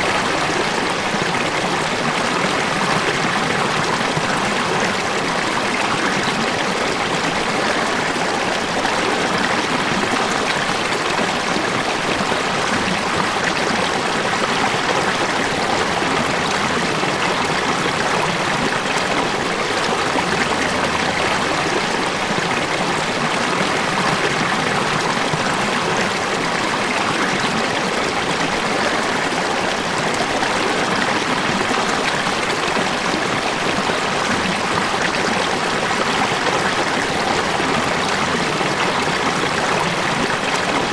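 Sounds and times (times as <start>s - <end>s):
water rushing over rocks: 0.0s - 40.9s.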